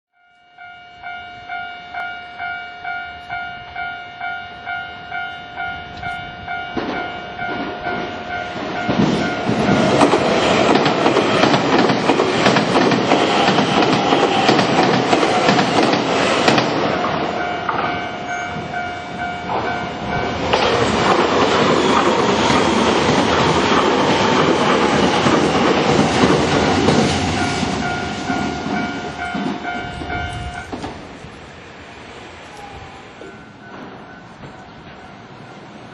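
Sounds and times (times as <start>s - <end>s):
level crossing warning bell: 0.2s - 10.1s, 16.8s - 20.5s, 27.3s - 30.8s, 32.5s - 35.4s
electric train rumbling past: 0.6s - 35.9s.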